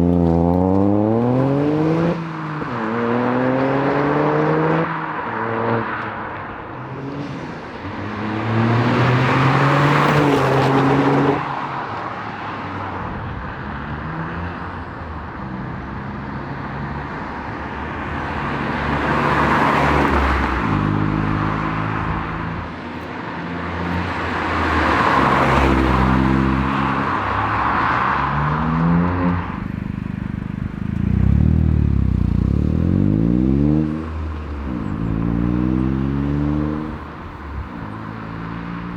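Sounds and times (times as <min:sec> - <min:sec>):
car engine accelerating through gears: 0:28.5 - 0:37.1.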